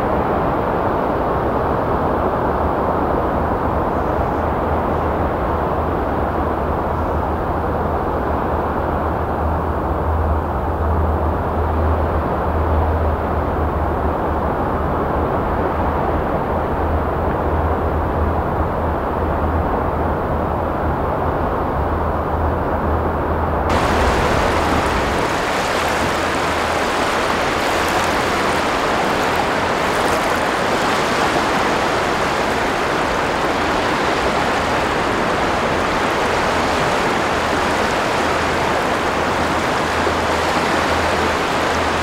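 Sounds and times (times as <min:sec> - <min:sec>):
sea surf on sandy beach: 0:23.7 - 0:42.0.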